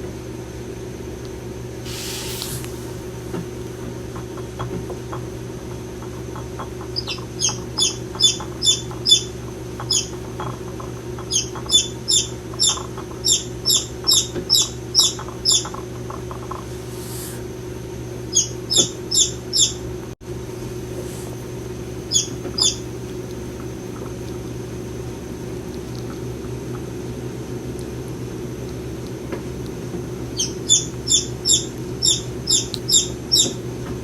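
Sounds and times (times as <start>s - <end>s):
steady low hum: 0.0s - 34.0s
bird squawking: 11.3s - 15.8s, 18.3s - 19.8s, 22.1s - 22.8s, 30.4s - 33.6s.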